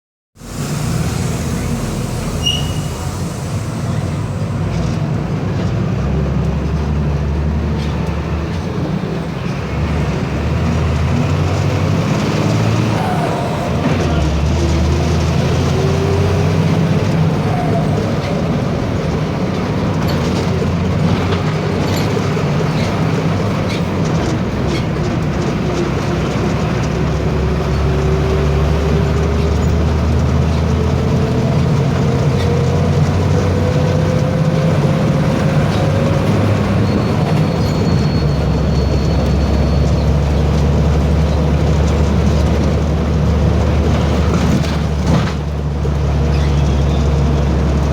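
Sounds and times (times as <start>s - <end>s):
turbocharger whistling: 0.4s - 4.6s, 11.8s - 18.8s, 33.2s - 41.0s
diesel engine drone: 0.4s - 47.9s.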